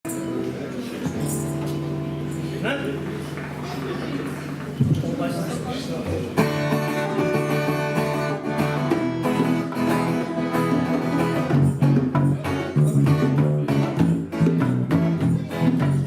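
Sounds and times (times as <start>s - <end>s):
guitar strumming chords: 0.1s - 4.9s, 6.3s - 16.0s.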